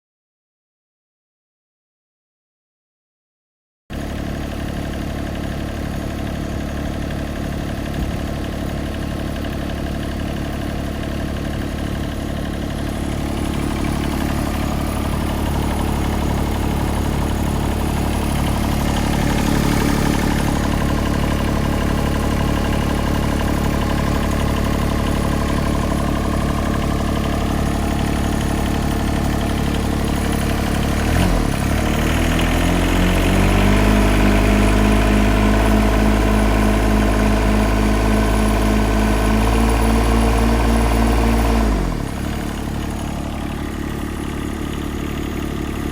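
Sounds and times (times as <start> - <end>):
diesel engine idling and revving: 3.9 - 45.9.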